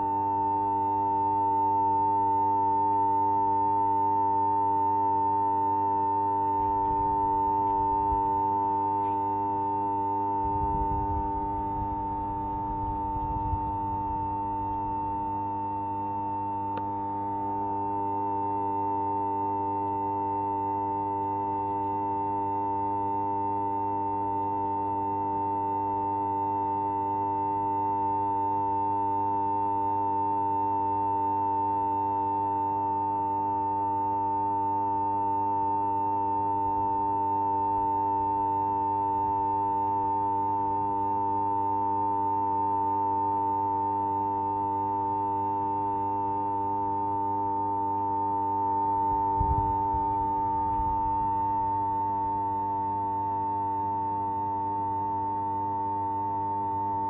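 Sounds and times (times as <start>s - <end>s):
high-pitched electronic humming: 0.0s - 57.0s
low hum: 6.5s - 9.2s, 10.2s - 18.1s, 48.8s - 52.0s.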